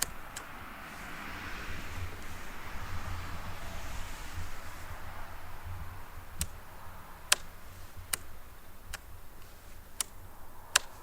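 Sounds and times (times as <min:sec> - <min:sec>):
sharp short clicks: 0:00.0 - 0:00.6, 0:06.3 - 0:11.0
low background noise: 0:00.0 - 0:11.0.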